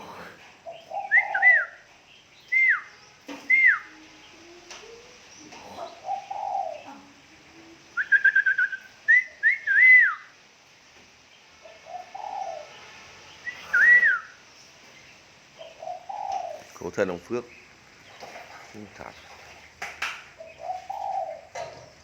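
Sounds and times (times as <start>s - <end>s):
bird whistling song: 0.7s - 5.5s, 8.0s - 10.4s, 11.7s - 14.4s.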